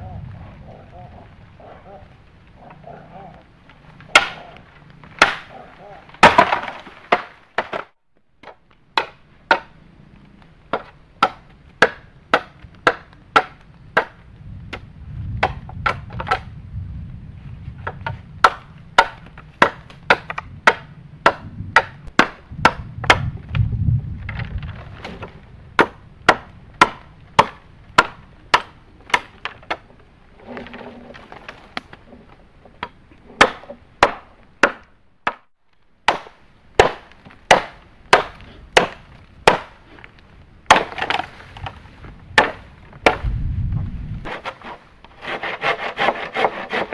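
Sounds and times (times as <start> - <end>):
low rumble: 0.0 - 5.9, 13.6 - 28.4, 41.6 - 44.3
blade chopping wood: 4.1 - 4.5, 5.2 - 5.5, 6.2 - 9.7, 17.8 - 23.3, 24.3 - 29.8, 32.8 - 35.5, 36.1 - 39.8, 40.7 - 41.7, 42.4 - 43.3.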